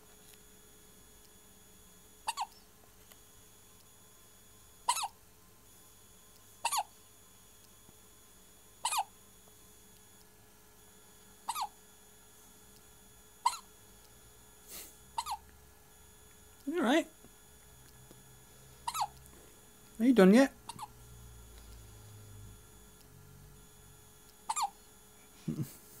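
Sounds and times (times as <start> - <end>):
person hiccuping: 2.3 - 2.6, 6.7 - 6.9, 11.5 - 11.7, 15.2 - 15.4, 18.9 - 19.1, 20.7 - 20.9, 24.5 - 24.8.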